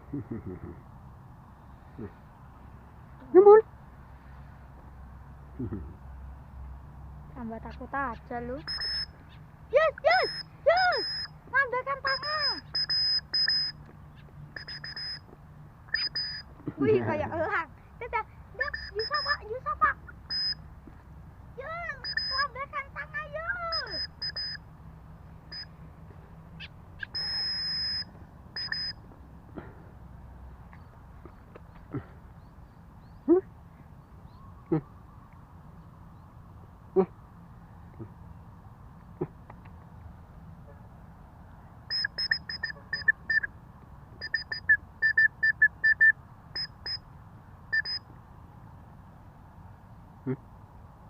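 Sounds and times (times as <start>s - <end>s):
bird calling short notes: 8.6s - 9.4s, 10.0s - 11.3s, 12.0s - 15.2s, 15.9s - 16.5s, 18.6s - 19.5s, 21.8s - 22.6s, 23.4s - 24.6s, 26.6s - 29.0s, 41.9s - 43.5s, 44.2s - 47.0s.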